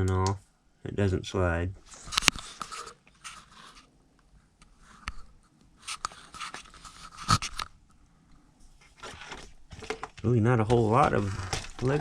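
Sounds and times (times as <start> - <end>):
rustling and scraping: 1.8 - 4.0, 4.7 - 7.7, 8.6 - 12.0.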